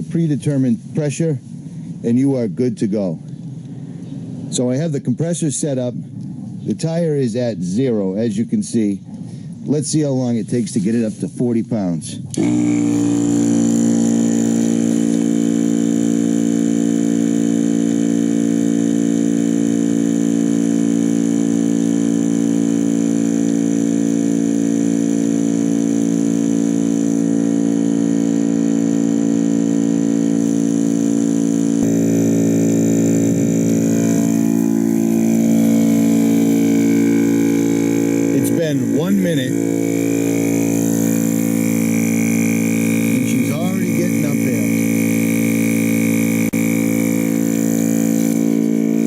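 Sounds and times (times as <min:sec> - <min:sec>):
air compressor motor humming: 0:12.0 - 0:49.0.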